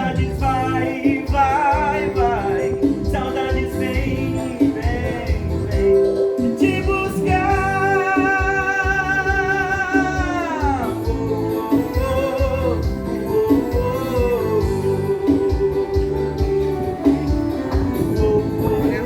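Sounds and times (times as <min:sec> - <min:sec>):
guitar accompaniment: 0:00.0 - 0:19.0
person singing: 0:00.0 - 0:19.0.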